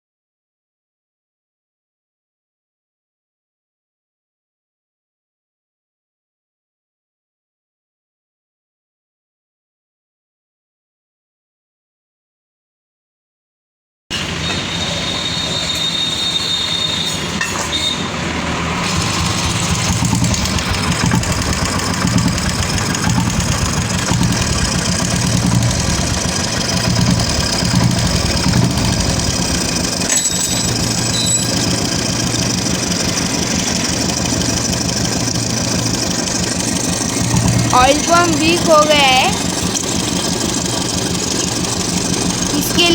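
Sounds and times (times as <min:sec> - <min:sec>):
engine tappet noise: 0:17.0 - 0:42.9
motorcycle engine running: 0:18.1 - 0:42.9.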